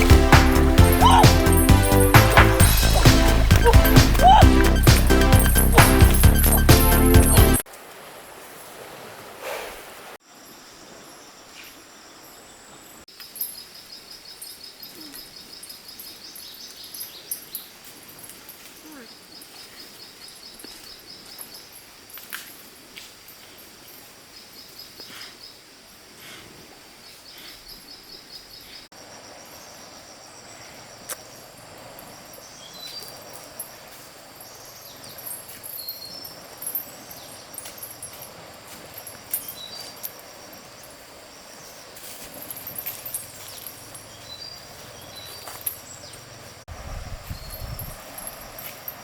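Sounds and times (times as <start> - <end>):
birds chirping: 0.0 - 7.6, 27.1 - 38.3, 38.9 - 40.9, 41.5 - 46.6
fast pulsing trill: 0.0 - 7.6.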